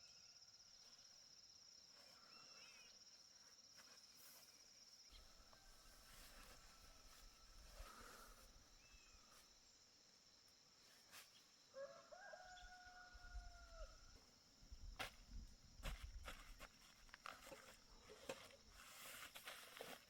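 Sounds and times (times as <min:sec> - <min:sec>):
faint rooster crowing: 0:05.1 - 0:09.1, 0:11.6 - 0:14.2.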